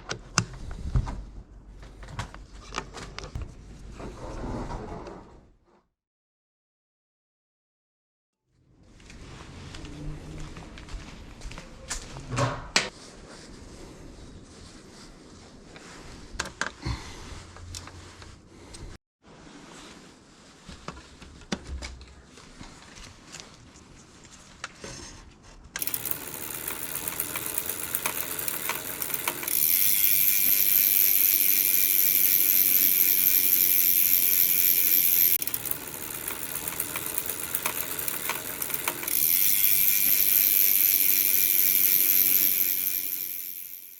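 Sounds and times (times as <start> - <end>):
bicycle freewheel ratcheting: 25.8 - 43.9.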